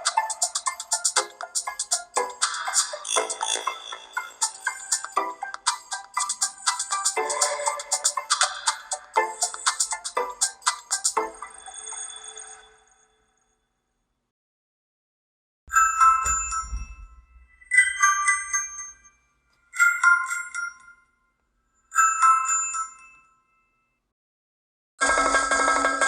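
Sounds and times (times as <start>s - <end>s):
phone ringtone melody: 0.0s - 13.0s, 15.7s - 19.1s, 19.8s - 21.1s
high chiming ringtone: 0.0s - 13.6s, 15.7s - 21.3s, 21.9s - 23.8s
low thud: 16.2s - 17.5s.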